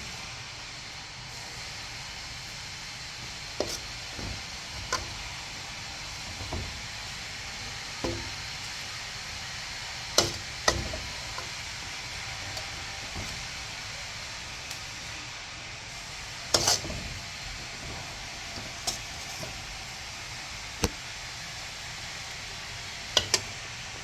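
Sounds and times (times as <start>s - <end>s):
frying hiss: 0.0s - 24.0s
metal spatula knocking in a pan: 3.6s - 5.3s, 8.0s - 8.6s, 10.2s - 11.9s.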